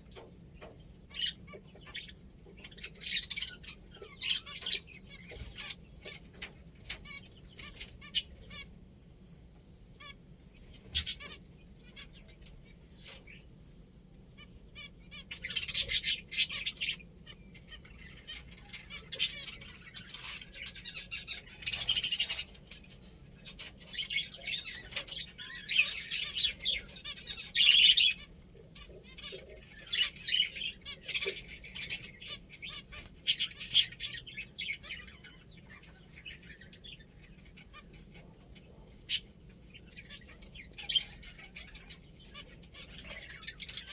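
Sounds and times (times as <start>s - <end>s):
finches chirping and twittering: 0.0s - 43.9s.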